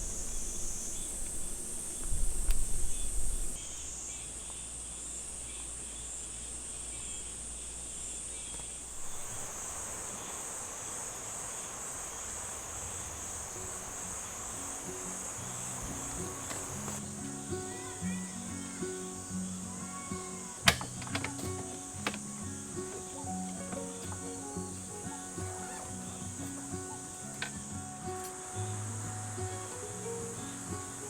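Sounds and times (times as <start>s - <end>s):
insects chirring: 0.0s - 31.0s
flowing stream: 8.7s - 31.0s.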